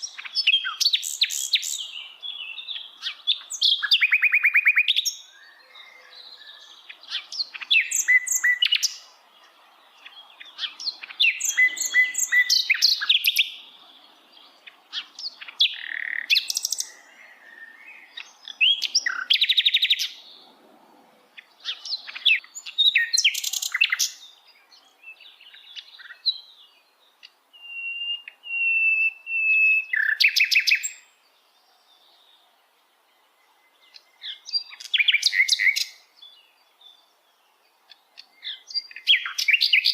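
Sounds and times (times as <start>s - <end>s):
thin wavering bird whistle: 7.5s - 9.0s, 11.2s - 13.6s, 27.5s - 31.0s.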